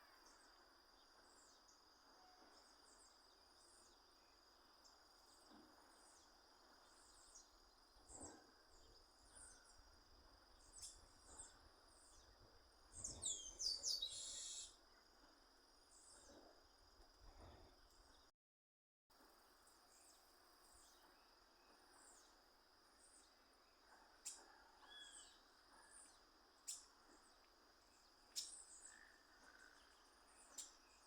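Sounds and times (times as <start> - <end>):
insect droning: 0.0 - 18.3, 19.2 - 31.0
bird singing with buzzy trill: 13.0 - 14.8, 24.9 - 26.0, 28.0 - 31.0.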